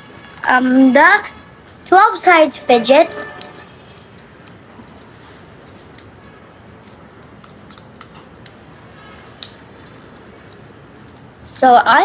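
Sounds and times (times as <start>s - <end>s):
plastic fidget toy clicks: 6.8s - 8.6s.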